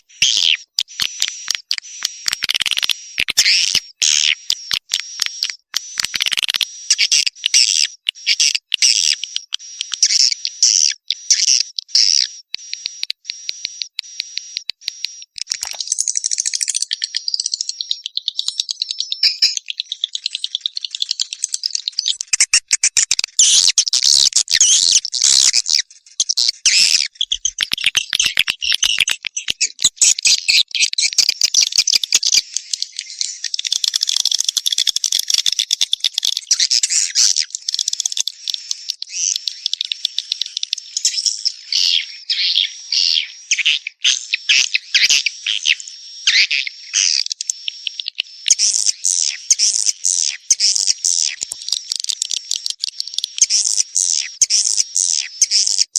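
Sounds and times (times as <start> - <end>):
high clicking bird chirps: 0.0 - 55.9.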